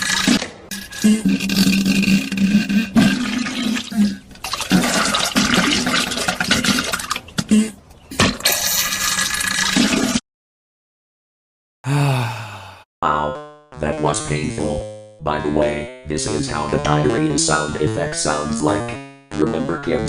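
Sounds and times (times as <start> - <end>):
wet spluttering fart bursts: 0.0 - 10.2, 19.3 - 19.8.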